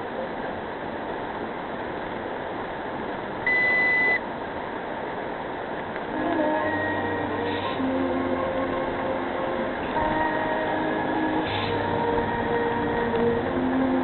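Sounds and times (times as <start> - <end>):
road and engine noise inside car: 0.0 - 14.0
high electronic beep: 3.5 - 4.2
music: 6.1 - 14.0.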